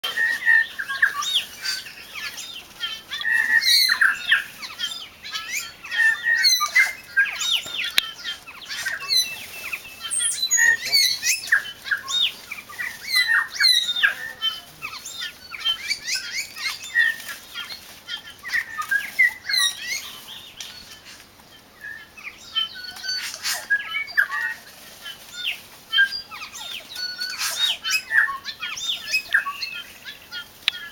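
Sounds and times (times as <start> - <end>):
wings flapping: 0.0 - 21.5
birds chirping and singing: 0.0 - 30.9.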